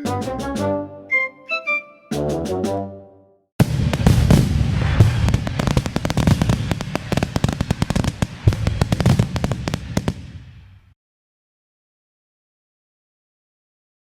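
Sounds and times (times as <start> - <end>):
fireworks booms: 3.6 - 11.0
fireworks crackling: 3.7 - 10.8.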